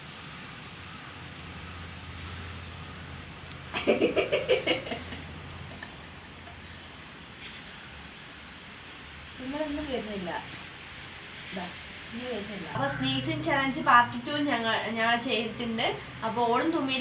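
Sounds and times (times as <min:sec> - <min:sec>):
person laughing: 0:03.8 - 0:05.9.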